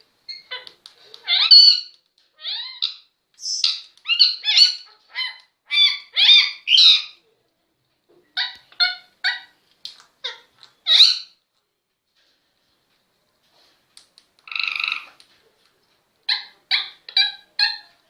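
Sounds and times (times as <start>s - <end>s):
parrot calling: 0.3s - 7.2s, 8.4s - 9.6s, 10.2s - 11.4s, 14.4s - 15.2s, 16.3s - 18.0s.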